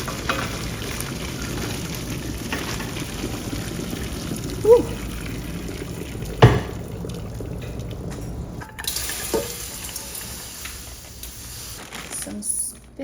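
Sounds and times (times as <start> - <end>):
water pouring into a colander: 0.0 - 12.6
pot knocking: 5.8 - 8.6.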